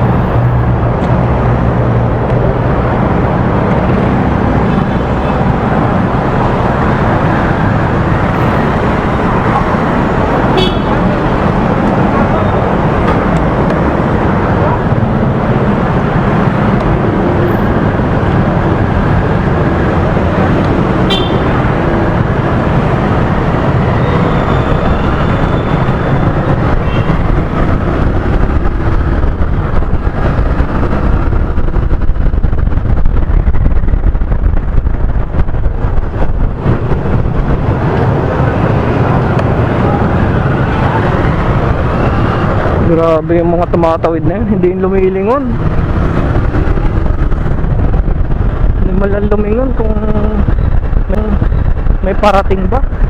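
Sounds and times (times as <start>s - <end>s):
surrounding traffic: 0.0s - 53.0s
wind and road noise: 0.0s - 53.0s
motorcycle engine running: 17.8s - 23.7s.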